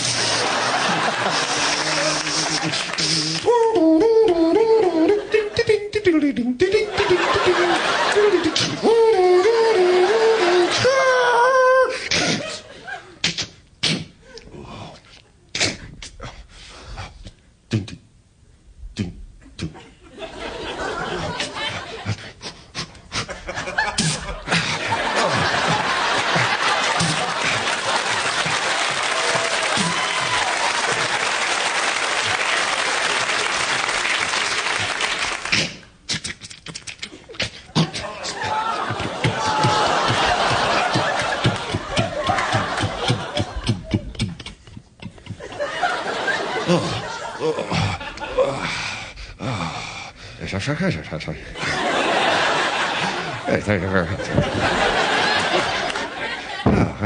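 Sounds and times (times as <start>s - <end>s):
audience applauding: 0.0s - 3.5s, 25.1s - 35.7s, 38.5s - 43.6s, 54.7s - 56.3s
man imitating a siren: 2.2s - 5.3s, 8.8s - 11.9s.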